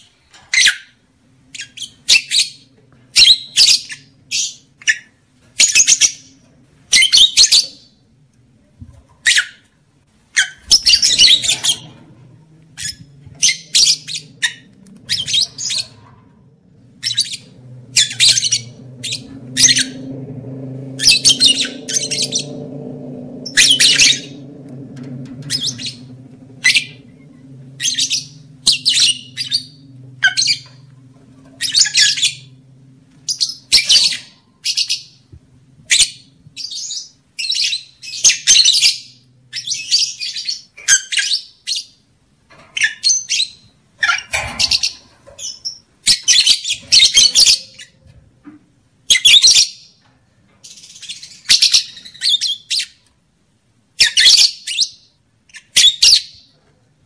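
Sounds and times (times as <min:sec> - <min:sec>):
faint low hum: 0:00.0 - 0:57.0
birds screeching chirps: 0:10.3 - 0:42.0, 0:42.8 - 0:48.1, 0:50.6 - 0:53.1, 0:54.0 - 0:56.6.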